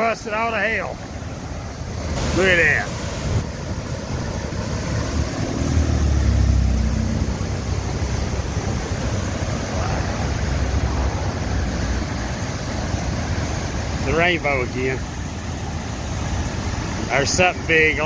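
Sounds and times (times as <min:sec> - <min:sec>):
water roaring over dam: 0:00.0 - 0:18.0.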